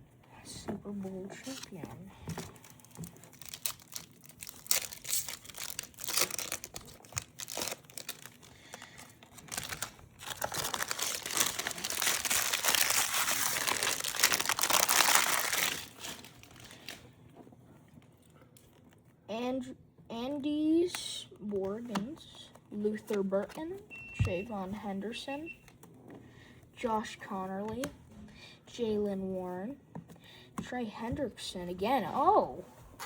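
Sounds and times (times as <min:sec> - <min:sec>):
wrapper crinkling and tearing: 0:02.5 - 0:17.0.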